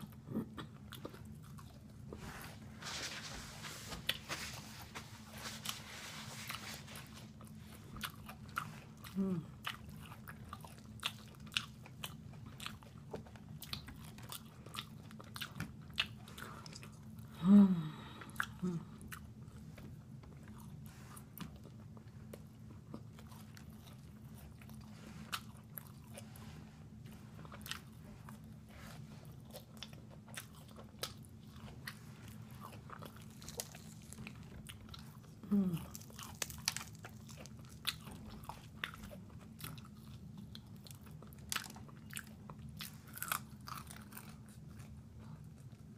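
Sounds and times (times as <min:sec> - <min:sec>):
low steady hum: 0:00.0 - 0:45.9
low vocal sound: 0:09.1 - 0:09.6, 0:17.3 - 0:19.0, 0:35.4 - 0:36.0
fried chicken crunching: 0:32.6 - 0:44.9.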